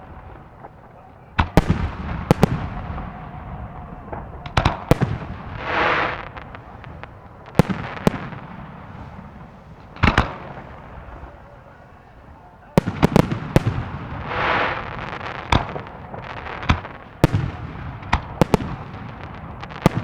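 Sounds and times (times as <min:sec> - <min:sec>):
fireworks hissing: 0:01.6 - 0:20.0.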